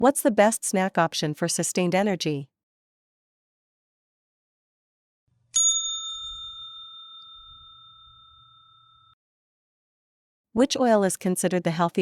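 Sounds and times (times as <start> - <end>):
bell ding: 5.6 - 9.2.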